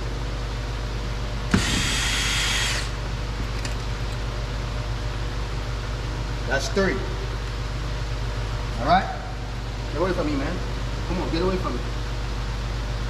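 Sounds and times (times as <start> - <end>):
drill click: 1.5 - 3.0
power drill whirring: 1.5 - 3.0.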